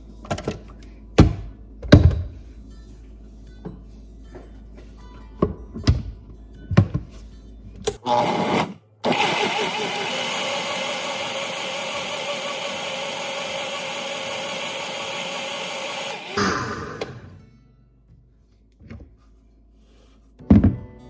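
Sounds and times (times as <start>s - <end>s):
blender running: 8.0s - 17.3s.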